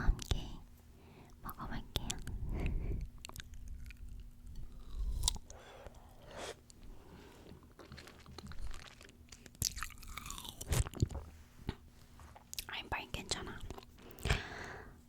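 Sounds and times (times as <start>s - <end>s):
chewing crisp fruit: 3.2s - 6.4s, 7.3s - 12.7s.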